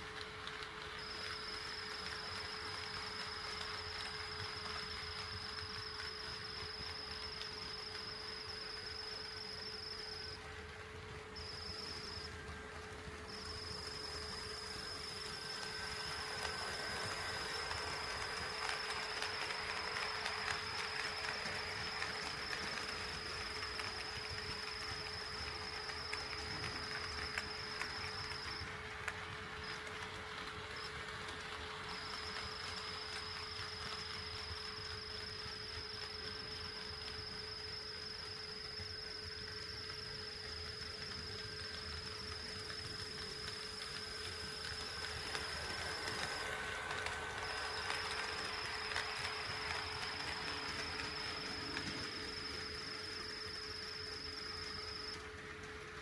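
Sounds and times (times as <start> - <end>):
model train rolling: 0.0 - 56.0
high-pitched whine: 1.0 - 10.4, 11.4 - 12.4, 32.0 - 55.4.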